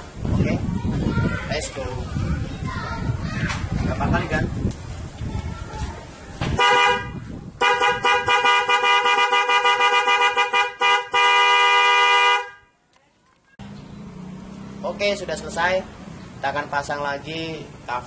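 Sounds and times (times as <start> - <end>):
car horn honking: 6.6 - 12.7.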